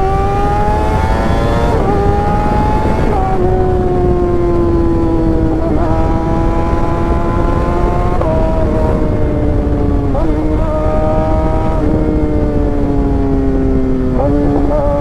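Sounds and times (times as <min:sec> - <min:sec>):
motorcycle engine at high revs: 0:00.0 - 0:15.0
wind and road noise: 0:00.0 - 0:15.0.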